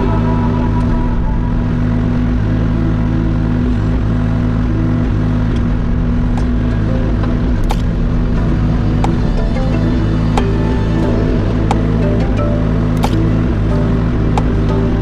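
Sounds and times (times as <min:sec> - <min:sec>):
excavator engine running: 0:00.0 - 0:15.0
sharp clicks: 0:07.6 - 0:08.1, 0:12.9 - 0:13.6.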